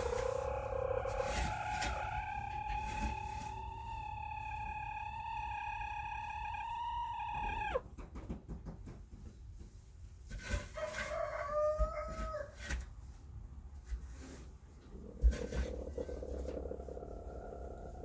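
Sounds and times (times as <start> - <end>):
hen cooing: 0.0 - 7.8, 15.2 - 18.0.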